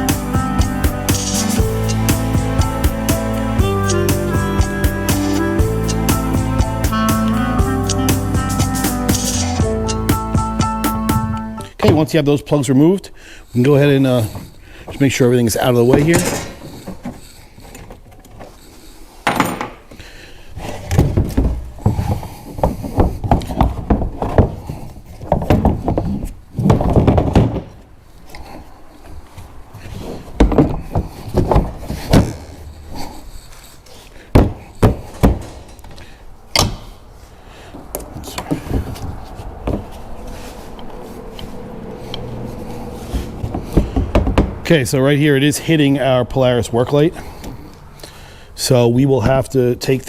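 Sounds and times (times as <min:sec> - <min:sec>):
plastic box thunks and scraping: 0:20.6 - 0:27.8, 0:29.9 - 0:32.5, 0:34.2 - 0:35.7, 0:43.2 - 0:44.6.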